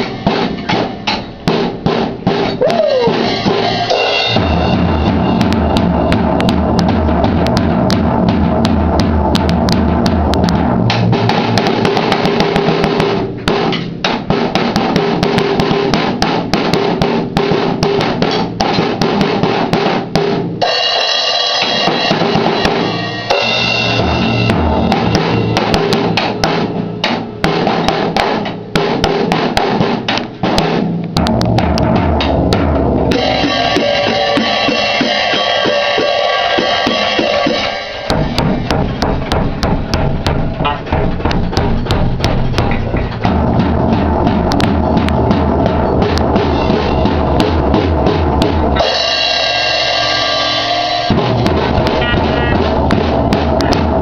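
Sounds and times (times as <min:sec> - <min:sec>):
snare and bass drum hits: 0:00.0 - 0:20.9, 0:21.6 - 0:54.0
ringing cymbals: 0:33.2 - 0:38.2, 0:48.8 - 0:51.3.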